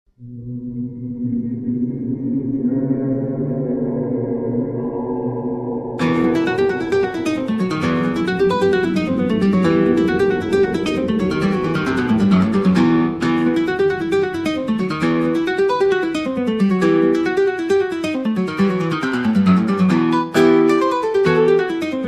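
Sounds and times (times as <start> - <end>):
fast plucked acoustic guitar: 6.0 - 22.0.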